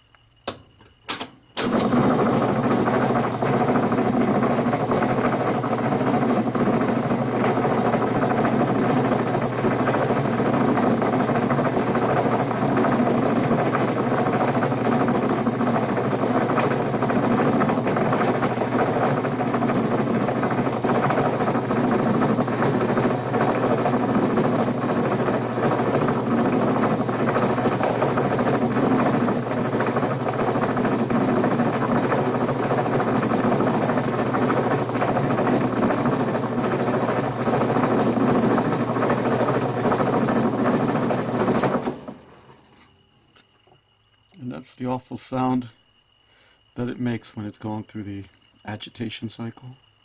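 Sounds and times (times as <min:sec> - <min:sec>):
washer grinding with low hum: 0:00.4 - 0:44.4
washer clicks: 0:00.5 - 0:02.0.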